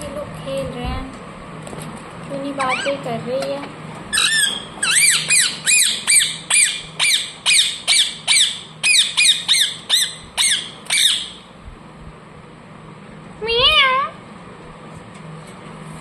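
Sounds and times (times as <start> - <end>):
parrot squawking: 2.6 - 3.1, 4.1 - 11.4.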